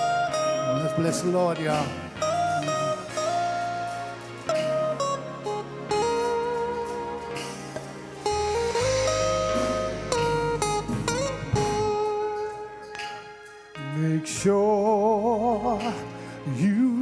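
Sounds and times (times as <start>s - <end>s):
guitar: 0.0s - 17.0s
bass line: 8.3s - 12.7s.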